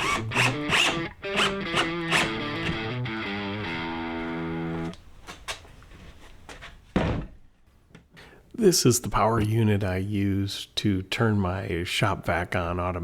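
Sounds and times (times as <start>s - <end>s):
guitar music: 0.0s - 5.0s.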